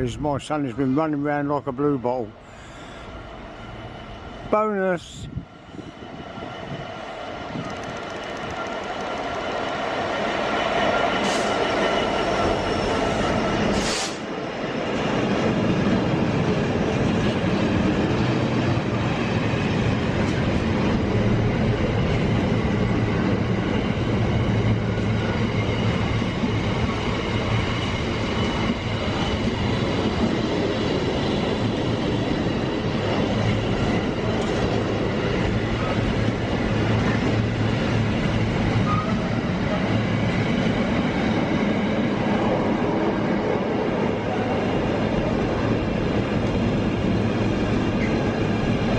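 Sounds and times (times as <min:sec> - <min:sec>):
train rumbling on track: 0:00.0 - 0:48.9.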